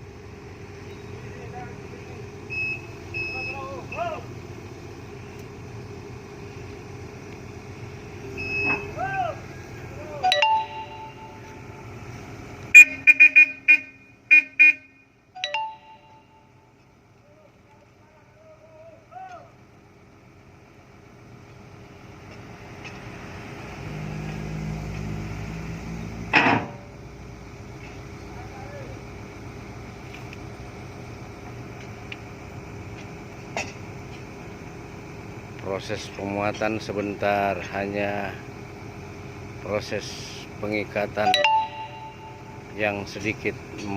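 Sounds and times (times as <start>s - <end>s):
engine rumble: 0.0s - 43.9s
sharp ding: 10.2s - 11.8s, 15.4s - 16.5s, 41.2s - 42.8s
short horn toots: 12.7s - 15.0s.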